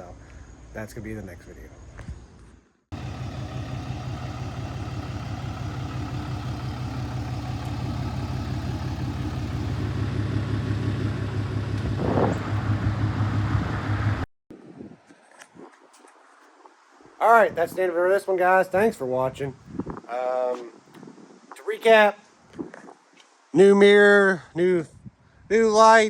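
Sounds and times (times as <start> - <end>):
diesel engine idling: 2.9 - 14.2.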